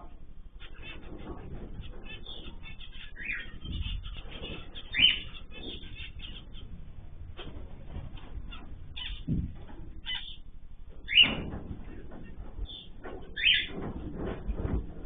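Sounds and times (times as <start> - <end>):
cage birds chattering: 0.0 - 15.0
bird squawk: 0.5 - 13.9.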